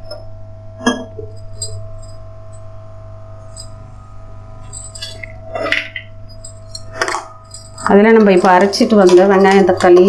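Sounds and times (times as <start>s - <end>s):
steady hum: 0.0s - 10.0s
steel utensils clinking: 4.6s - 10.0s
utensils clattering: 4.7s - 10.0s.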